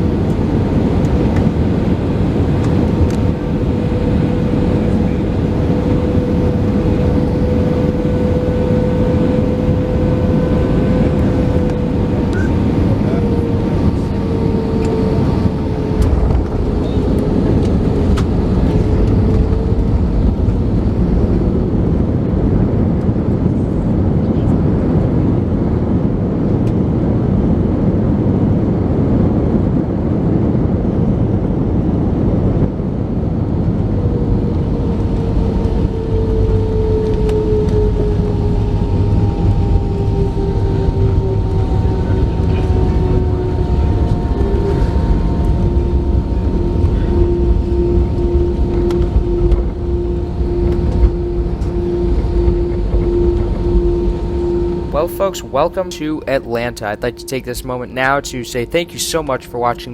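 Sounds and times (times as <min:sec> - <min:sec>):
aircraft cabin engine noise: 0:00.0 - 0:59.9
thin whine falling in pitch: 0:36.6 - 0:59.9.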